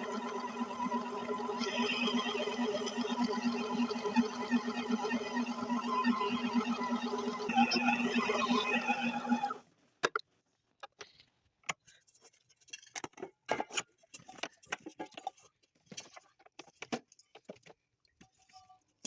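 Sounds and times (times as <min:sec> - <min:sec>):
electric motor humming: 0:00.0 - 0:09.6.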